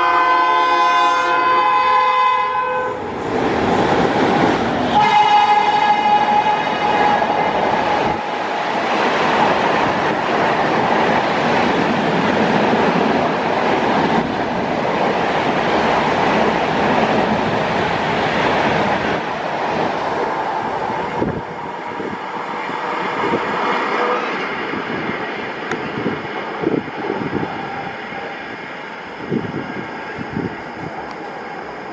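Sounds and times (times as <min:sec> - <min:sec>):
train horn blast: 0:00.0 - 0:03.0, 0:04.9 - 0:08.2, 0:21.2 - 0:24.5
train rushing past: 0:00.0 - 0:31.9.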